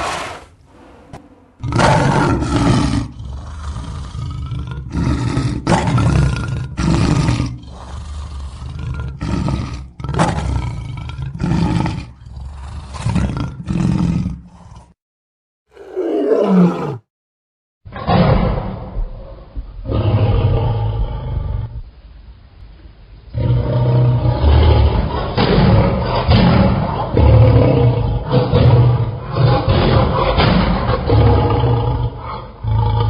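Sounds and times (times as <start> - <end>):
deep rough creature roars: 0.0 - 15.0, 15.7 - 17.1, 23.3 - 33.0.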